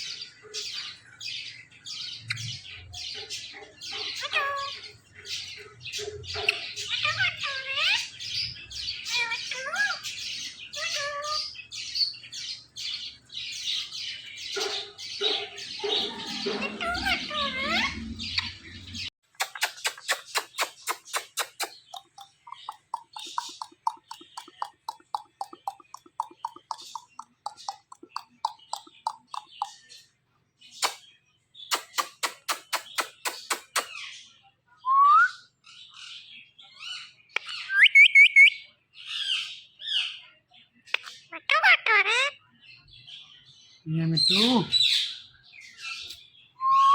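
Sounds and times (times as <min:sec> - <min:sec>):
parakeet chattering: 0:02.3 - 0:08.4, 0:09.0 - 0:11.6, 0:13.5 - 0:29.9, 0:31.7 - 0:34.0, 0:41.0 - 0:42.4
parakeet clicking chirps: 0:19.2 - 0:30.0, 0:30.8 - 0:31.0, 0:31.7 - 0:34.0, 0:40.9 - 0:42.0.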